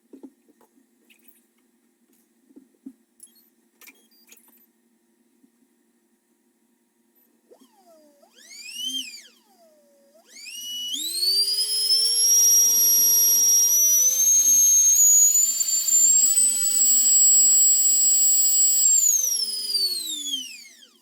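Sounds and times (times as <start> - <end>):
electric fan motor whine: 7.6 - 21.0.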